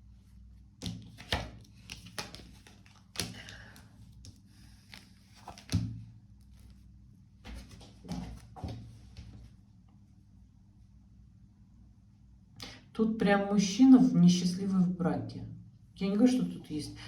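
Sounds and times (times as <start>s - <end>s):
cards tapping on a tabletop: 0.8s - 3.6s
cards rustling: 0.8s - 5.8s.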